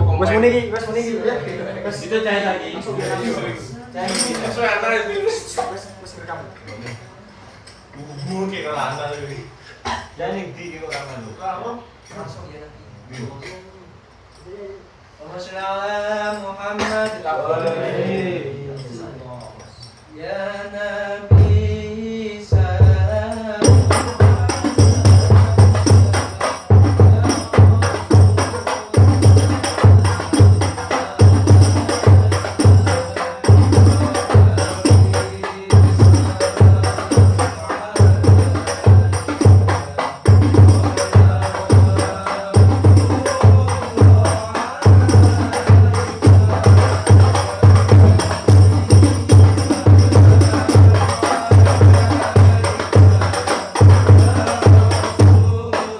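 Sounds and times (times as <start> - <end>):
tambourine jingles: 4.1 - 4.7, 19.3 - 20.2, 23.2 - 55.5
man singing: 15.4 - 17.2, 20.1 - 55.9
frame drums playing: 21.3 - 21.8, 22.5 - 55.9.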